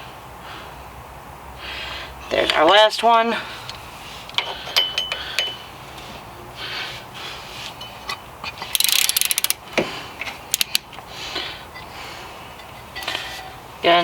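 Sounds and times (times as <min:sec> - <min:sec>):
ratchet wrench clicking: 0:08.1 - 0:09.6, 0:10.5 - 0:10.9
sharp metal clicks: 0:08.1 - 0:09.6, 0:10.5 - 0:11.0.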